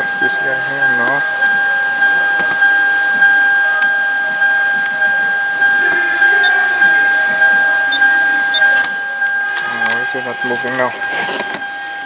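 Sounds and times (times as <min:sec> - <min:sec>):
car warning chime: 0:00.0 - 0:12.0.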